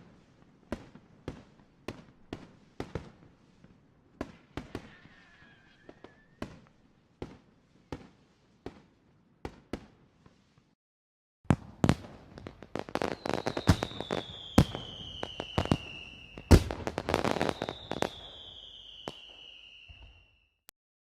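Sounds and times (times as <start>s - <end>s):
fireworks bangs and crackling: 0.0s - 10.8s, 11.5s - 20.5s
falling whistle: 17.3s - 20.6s.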